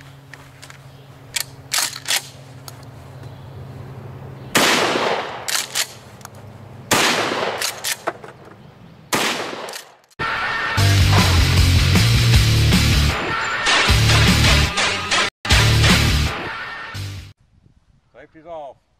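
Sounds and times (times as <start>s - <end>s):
gun handling clicks: 0.3s - 2.9s, 5.2s - 6.5s, 7.4s - 8.6s, 9.4s - 10.2s
shotgun shots: 4.5s - 6.0s, 6.9s - 8.2s, 9.1s - 10.0s.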